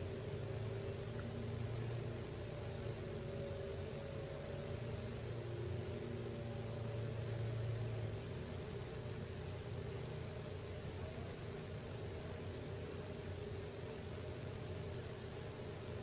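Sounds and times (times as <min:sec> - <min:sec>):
heating system humming: 0:00.0 - 0:16.0.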